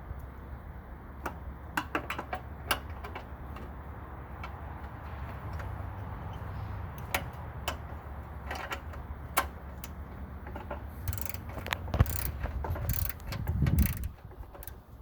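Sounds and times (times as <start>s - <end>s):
ratchet wrench clicking: 11.0s - 14.8s.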